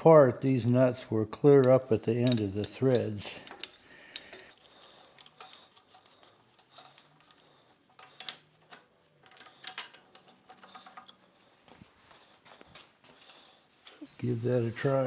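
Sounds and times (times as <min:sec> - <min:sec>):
wrench clicking on metal nuts: 0:01.6 - 0:11.2.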